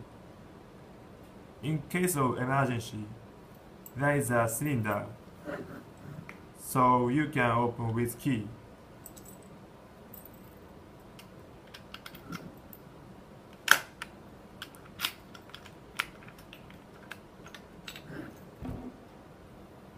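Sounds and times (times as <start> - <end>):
lock mechanism clicking: 11.2 - 12.6.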